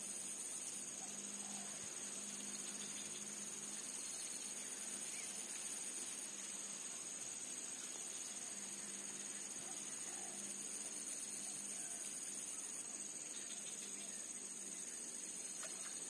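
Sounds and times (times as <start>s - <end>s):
insects trilling: 0.0s - 16.0s.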